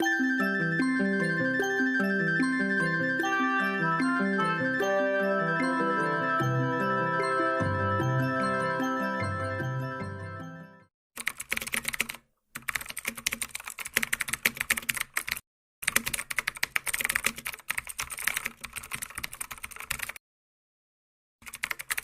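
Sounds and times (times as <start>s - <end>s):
rapid computer keyboard typing: 11.2s - 20.2s, 21.4s - 22.0s.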